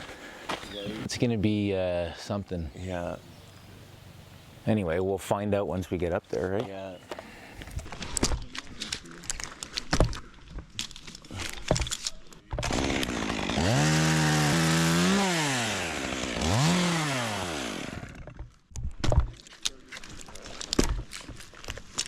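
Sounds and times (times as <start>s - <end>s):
chainsaw engine revving: 12.6s - 18.3s
sharp knocks and clatter: 18.2s - 19.4s.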